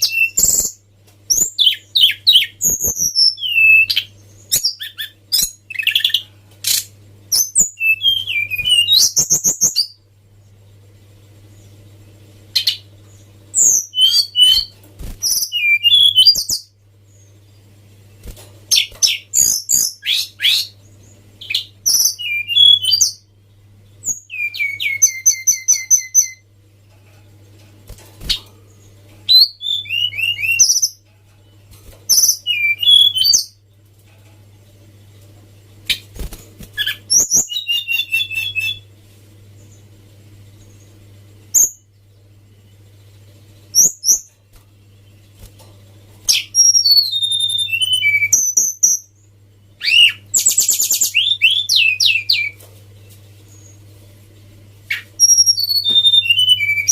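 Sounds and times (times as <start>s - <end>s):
bird singing whistled trills: 0.0s - 10.0s, 13.6s - 17.3s, 18.7s - 20.8s, 21.4s - 23.3s, 24.0s - 26.4s, 29.3s - 31.0s, 32.1s - 33.6s, 36.8s - 38.9s, 41.5s - 41.8s, 43.7s - 44.3s, 46.3s - 49.2s, 49.8s - 52.6s, 54.9s - 56.9s
faint low steady hum: 0.0s - 56.9s.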